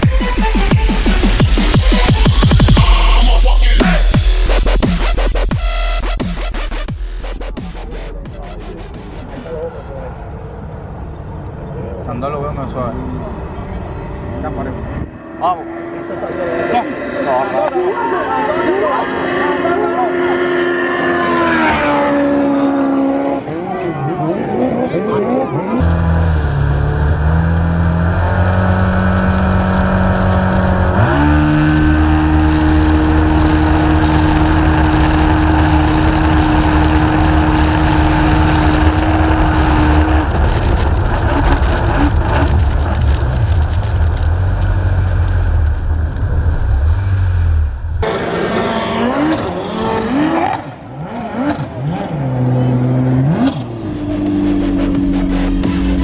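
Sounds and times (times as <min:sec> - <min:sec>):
jet ski engines revving: 0:13.0 - 0:56.0.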